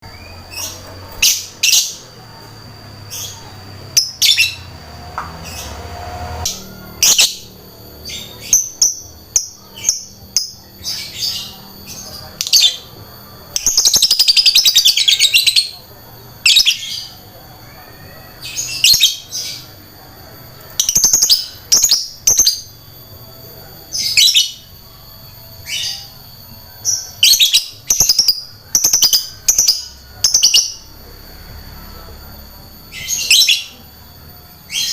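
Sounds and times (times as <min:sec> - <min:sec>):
lovebird chirping: 0:03.0 - 0:19.8, 0:23.8 - 0:34.9.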